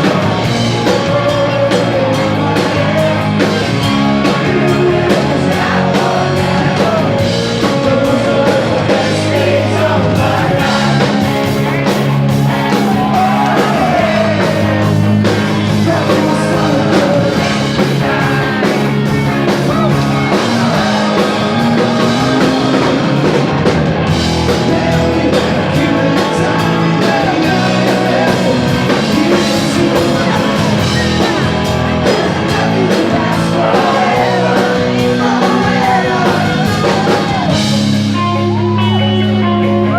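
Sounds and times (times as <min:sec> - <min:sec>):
lead singer singing: 0:00.0 - 0:39.2
rock band playing loudly: 0:00.0 - 0:39.9.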